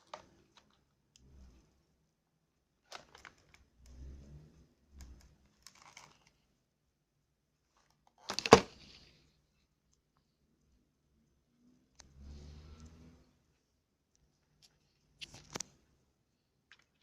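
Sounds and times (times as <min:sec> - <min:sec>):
plastic and cardboard crinkling: 0:02.8 - 0:03.6, 0:05.5 - 0:06.4, 0:07.7 - 0:09.1.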